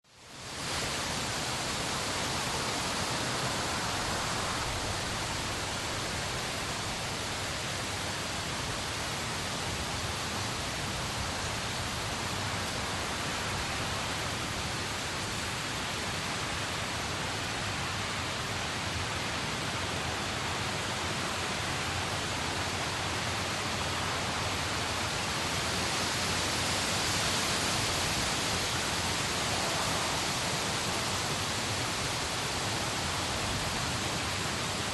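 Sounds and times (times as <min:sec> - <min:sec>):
steady rushing hiss: 0:00.1 - 0:34.9.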